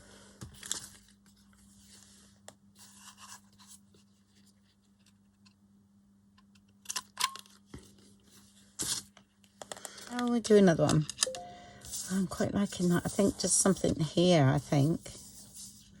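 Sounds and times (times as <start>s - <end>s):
paper scratching and rustling: 14.6s - 16.0s.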